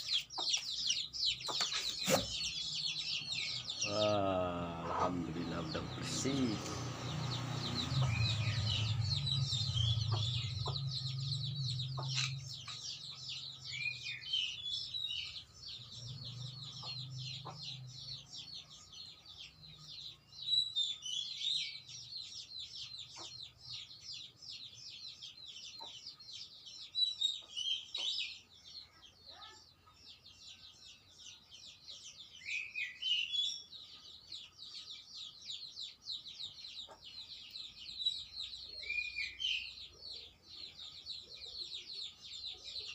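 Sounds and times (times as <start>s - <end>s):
chickens clucking: 0.0s - 19.2s, 22.9s - 23.6s, 25.2s - 28.5s, 36.6s - 38.9s
birds chirping rapidly: 0.0s - 42.9s.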